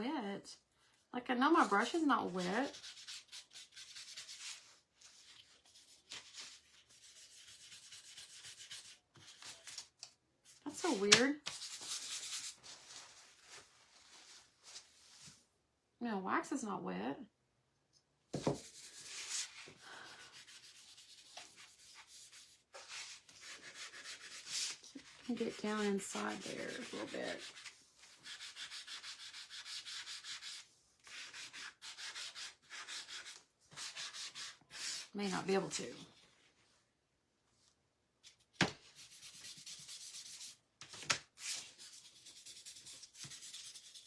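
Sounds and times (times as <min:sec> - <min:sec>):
brush scrubbing strokes: 0:18.6 - 0:35.5
paintbrush rubbing wax: 0:18.6 - 0:35.5.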